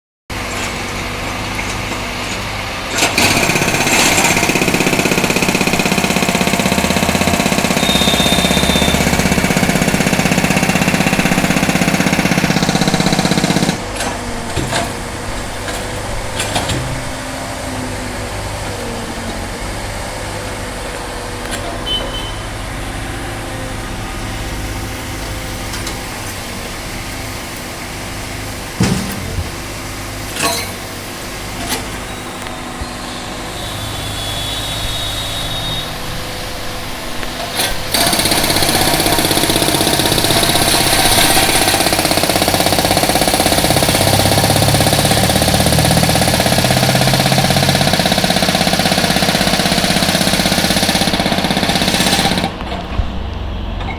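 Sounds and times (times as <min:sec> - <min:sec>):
machine engine running: 0:00.4 - 0:53.0
concrete breaker hammering: 0:02.9 - 0:18.0, 0:28.3 - 0:31.0, 0:37.1 - 0:52.9
sharp knocks: 0:28.8 - 0:29.8.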